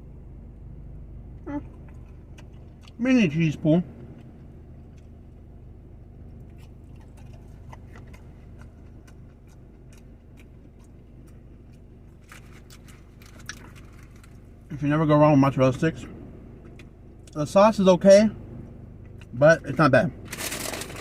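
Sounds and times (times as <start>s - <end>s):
steady low hum: 0.0s - 21.0s
mouth clicks and smacks chewing: 1.6s - 3.0s, 6.3s - 14.4s.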